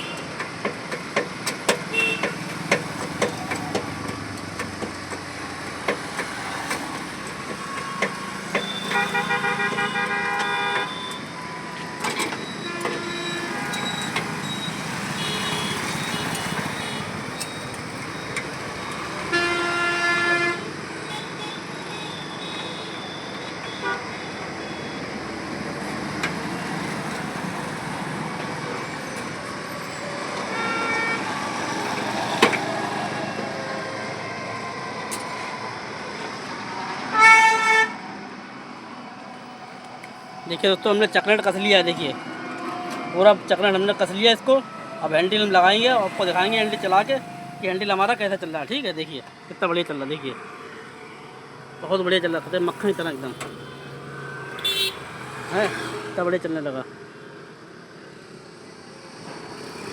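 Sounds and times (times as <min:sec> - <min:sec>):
vehicle horns honking: 0:00.0 - 0:00.3, 0:01.9 - 0:02.5, 0:07.8 - 0:11.3, 0:12.4 - 0:17.2, 0:19.2 - 0:25.0, 0:30.4 - 0:31.4, 0:37.1 - 0:38.0, 0:52.9 - 0:55.9
street traffic noise: 0:00.0 - 0:59.9
sharp metal clicks and knocks: 0:00.1 - 0:09.0.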